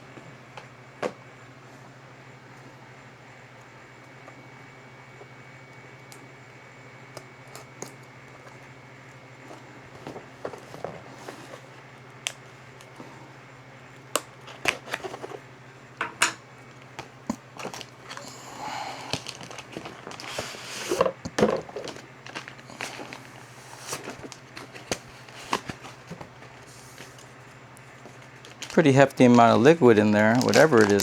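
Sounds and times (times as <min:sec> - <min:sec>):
steady low hum: 0:00.0 - 0:31.0
wrapping crinkling: 0:16.7 - 0:31.0.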